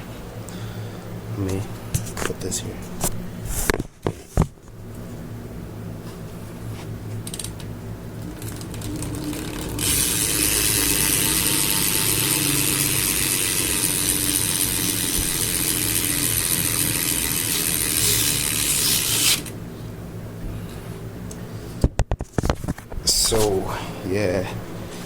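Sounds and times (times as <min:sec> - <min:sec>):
bicycle hub ratcheting buzz: 0:07.2 - 0:19.6.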